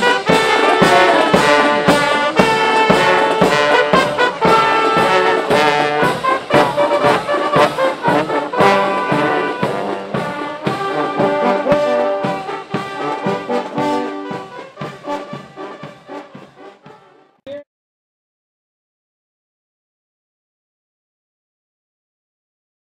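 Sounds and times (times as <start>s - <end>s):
brass horns: 0.0s - 17.4s
marching drum beat: 0.0s - 17.4s.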